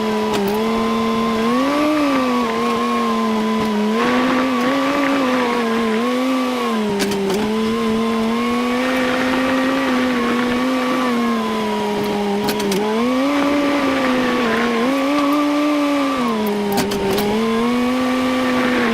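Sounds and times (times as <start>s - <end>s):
vehicle engine revving: 0.0s - 18.9s.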